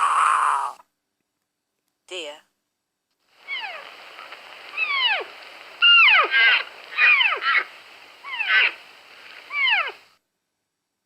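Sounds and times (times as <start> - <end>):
deer squealing calls: 3.4 - 10.0
deer quavering bleat: 4.7 - 8.8.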